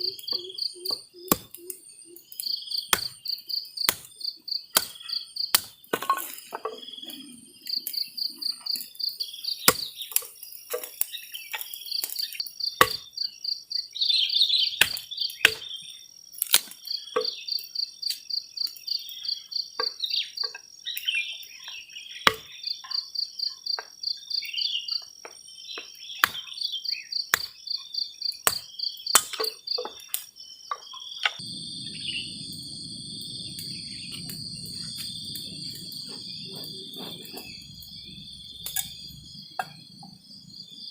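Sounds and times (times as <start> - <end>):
crickets chirping: 0.0 - 40.9
low rushing noise: 31.4 - 40.8.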